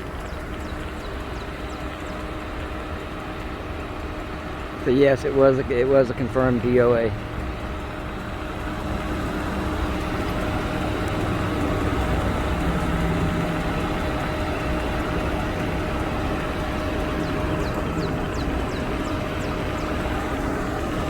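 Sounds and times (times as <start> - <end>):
engine idling: 0.0 - 21.0.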